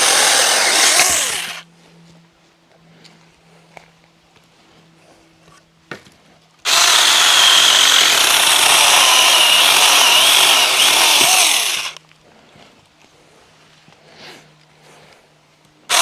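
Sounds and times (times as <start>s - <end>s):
electric chainsaw cutting wood: 0.0s - 1.6s, 6.7s - 12.0s.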